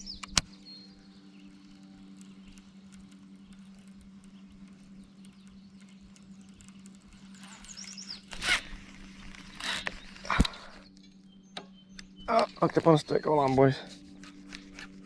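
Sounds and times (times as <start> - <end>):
steady low hum: 0.0 - 15.0
fishing line zipping from reel: 1.4 - 10.9.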